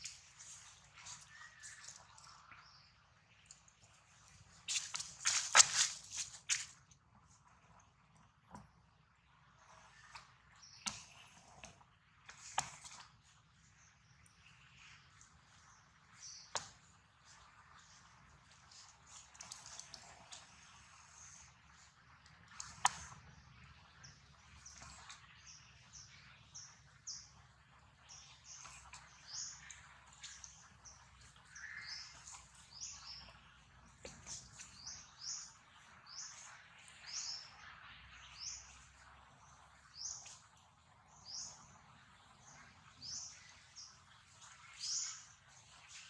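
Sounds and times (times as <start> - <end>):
birds chirping: 28.0 - 40.4.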